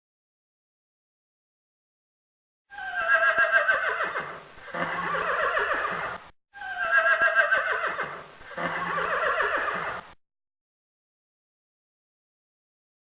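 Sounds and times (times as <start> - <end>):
horse whinny: 2.7 - 10.1.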